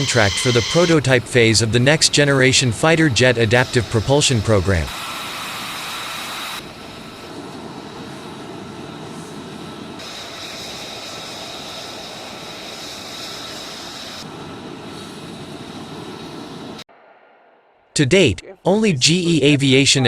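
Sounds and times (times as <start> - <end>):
high-pitched engine whine: 0.0 - 5.0
jet engine rushing: 0.0 - 19.5.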